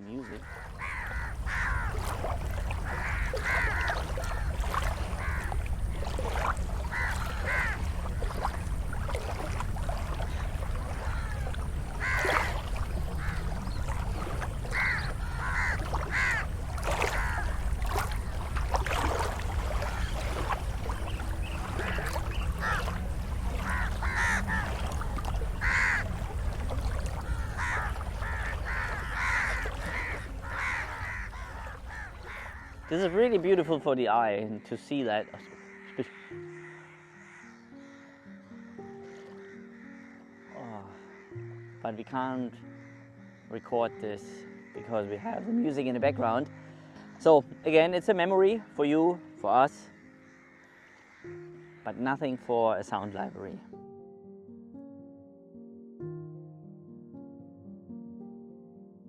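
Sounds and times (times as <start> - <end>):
crows cawing: 0.0 - 8.6, 10.0 - 33.9, 34.5 - 47.7, 48.6 - 53.9.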